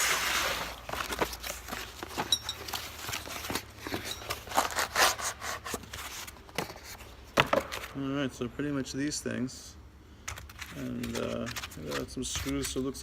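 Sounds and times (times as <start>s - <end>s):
packaging rustling: 0.0s - 7.0s, 10.3s - 13.0s.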